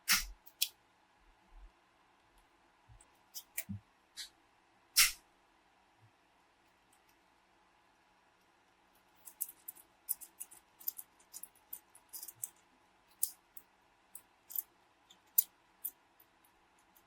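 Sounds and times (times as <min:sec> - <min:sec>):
small hard parts clicking: 0:09.0 - 0:17.0.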